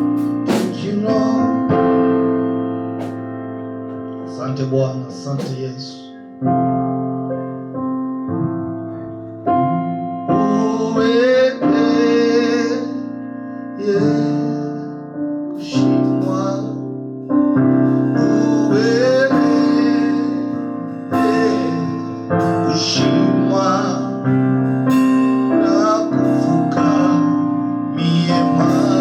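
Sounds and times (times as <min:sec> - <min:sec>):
keyboard chords: 0:00.0 - 0:29.0
person singing long notes: 0:10.3 - 0:13.1, 0:13.8 - 0:16.9, 0:18.1 - 0:24.4, 0:25.5 - 0:29.0.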